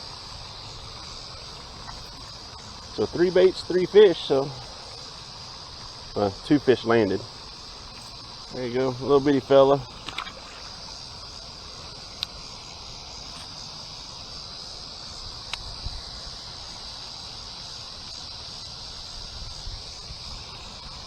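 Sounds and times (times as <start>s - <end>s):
insect chorus: 0.0s - 21.0s.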